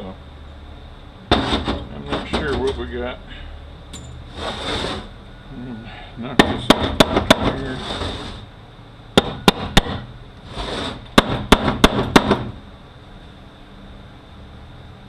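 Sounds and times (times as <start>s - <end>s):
scraping shuffle: 4.3s - 5.1s, 7.4s - 8.4s, 10.4s - 11.0s.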